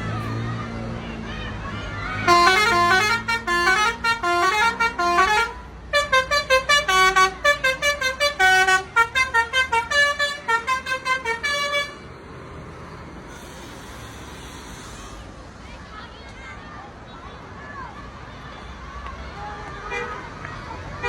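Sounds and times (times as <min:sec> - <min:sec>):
multi-tone bus horn tune: 0:02.2 - 0:12.1, 0:19.8 - 0:20.2.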